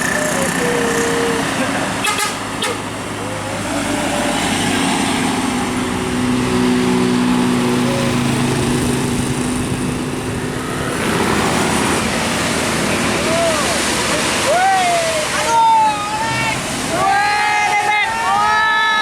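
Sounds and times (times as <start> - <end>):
vehicle engine humming: 0.0 - 17.2
road noise: 0.0 - 19.0.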